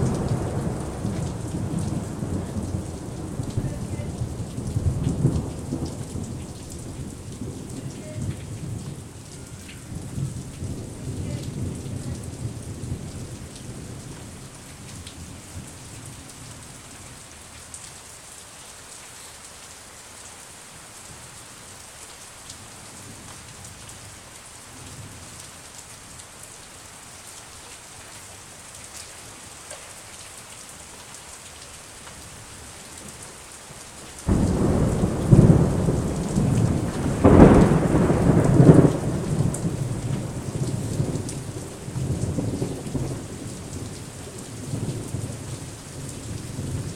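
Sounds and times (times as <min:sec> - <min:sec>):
rolling thunder: 0:00.0 - 0:09.1, 0:09.9 - 0:14.3, 0:34.3 - 0:46.9
steady rain falling: 0:00.0 - 0:46.9.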